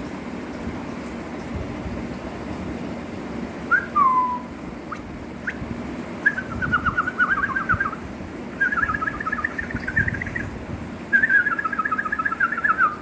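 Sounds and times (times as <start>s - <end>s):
bird singing whistled notes: 3.7s - 4.5s, 6.2s - 8.0s, 8.6s - 10.5s, 11.1s - 13.0s.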